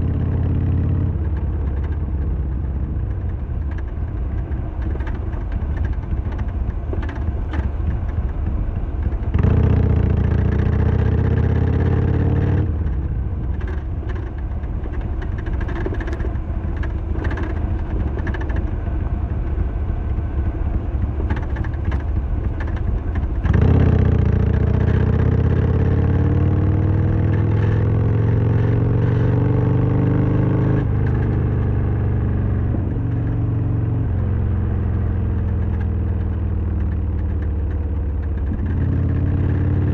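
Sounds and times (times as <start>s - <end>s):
motorcycle engine riding: 0.0s - 39.9s
rattling clicks and knocks: 3.2s - 9.5s, 12.9s - 23.7s.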